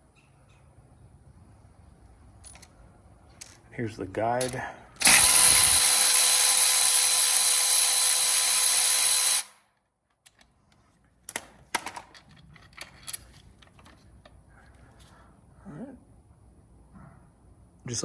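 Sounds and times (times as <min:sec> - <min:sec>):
power tool motor running: 0:05.0 - 0:09.6.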